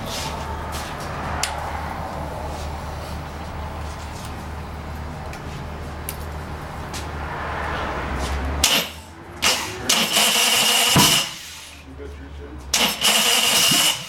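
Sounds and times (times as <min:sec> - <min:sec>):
low hum: 0:00.0 - 0:08.2
racing engine firing bursts: 0:08.5 - 0:11.7, 0:12.7 - 0:14.0.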